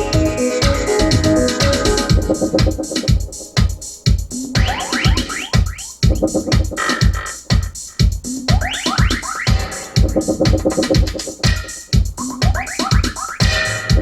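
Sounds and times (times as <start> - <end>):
drum machine kick: 0.0 - 14.0
electronic music over loudspeakers: 0.0 - 14.0
synthesizer rising sweeps: 4.6 - 7.1.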